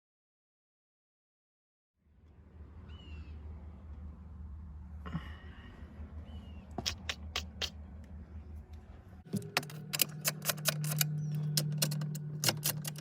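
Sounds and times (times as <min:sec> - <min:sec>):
steady low hum: 0:02.0 - 0:13.0
sharp clicks and taps: 0:06.7 - 0:13.0.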